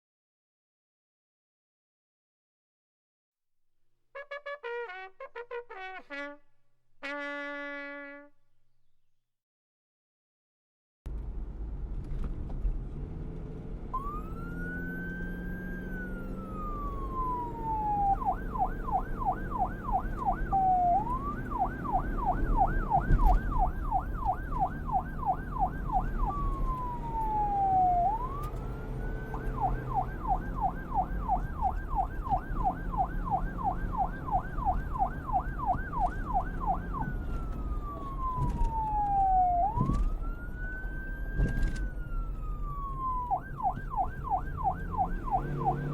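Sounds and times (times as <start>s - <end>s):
police siren wailing and yelping: 14.0s - 45.9s.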